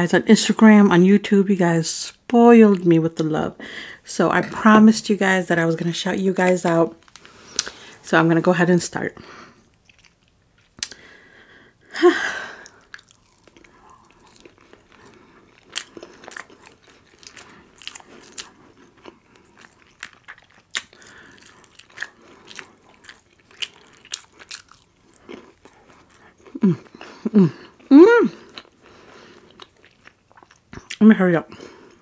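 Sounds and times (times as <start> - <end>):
biting and chewing crunches: 9.7 - 11.0, 12.6 - 31.0.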